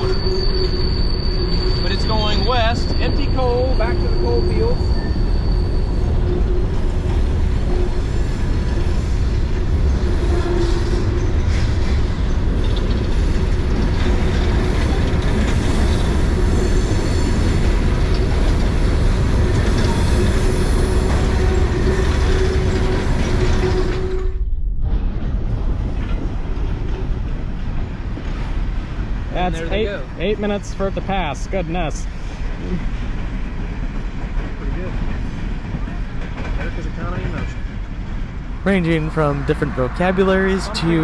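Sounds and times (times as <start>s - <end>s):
freight train wheels rumbling on rail: 0.0s - 41.0s
steady tone: 38.7s - 41.0s.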